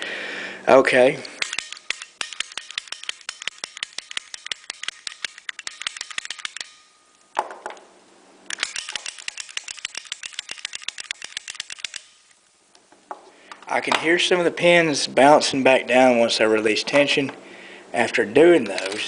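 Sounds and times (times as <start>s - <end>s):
lock pick gun snapping: 1.2s - 7.8s, 8.5s - 12.3s, 18.6s - 19.0s.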